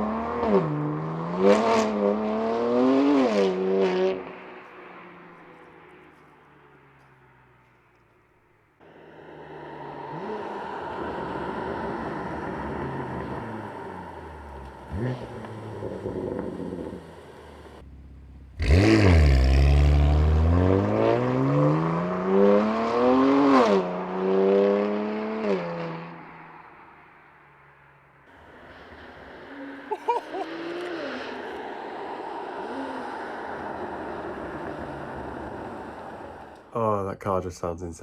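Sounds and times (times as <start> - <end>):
car engine revving: 0.0 - 6.4, 8.8 - 36.7.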